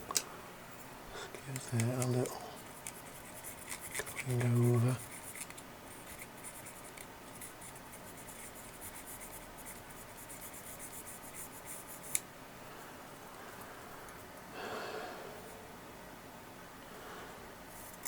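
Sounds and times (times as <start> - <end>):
small tool scratching pins: 1.4 - 12.2.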